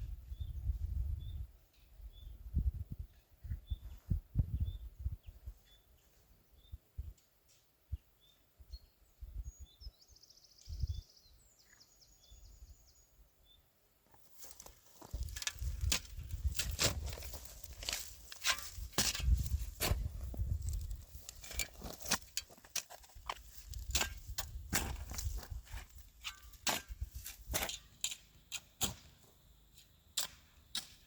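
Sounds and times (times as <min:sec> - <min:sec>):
small bird chirping: 0:00.2 - 0:07.2, 0:07.9 - 0:13.6
crunching and rustling on dry ground: 0:14.1 - 0:29.4.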